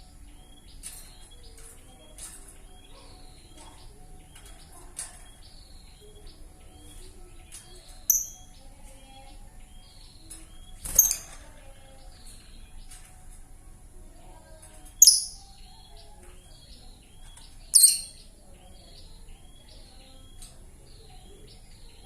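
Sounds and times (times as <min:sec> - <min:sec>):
lovebird chattering chirps: 0:08.1 - 0:08.5, 0:15.0 - 0:15.6, 0:17.7 - 0:18.3
loud shrill bird calls: 0:15.0 - 0:15.6, 0:17.7 - 0:18.3.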